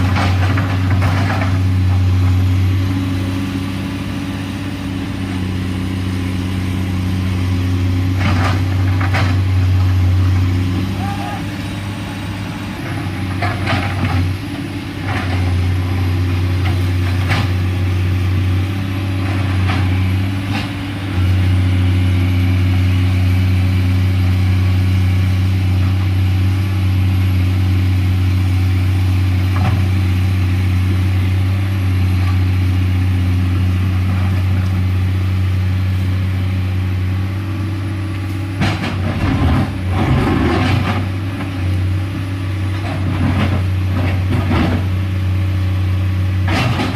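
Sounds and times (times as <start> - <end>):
excavator diesel engine running: 0.0 - 46.9.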